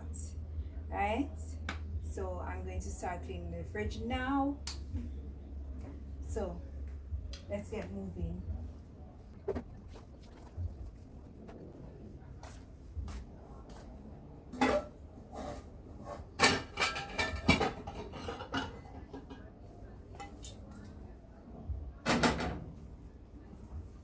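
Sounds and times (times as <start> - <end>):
dishes clinking and knocking: 14.5 - 19.5, 22.0 - 22.8.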